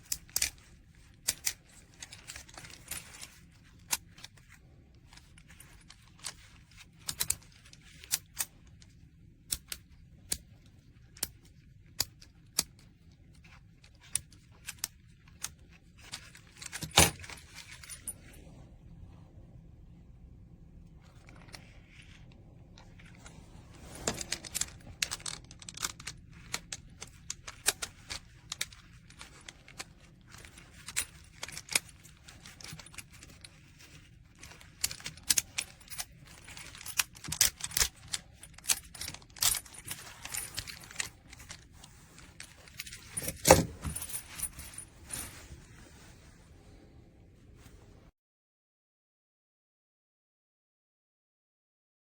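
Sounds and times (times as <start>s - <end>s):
metal chain links clinking: 22.8s - 45.5s.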